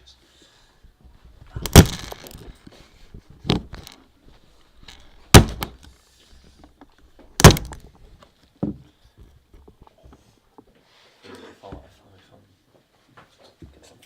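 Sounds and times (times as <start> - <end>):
sharp thuds of object struck: 1.6 - 2.4, 5.3 - 5.8, 7.4 - 7.9.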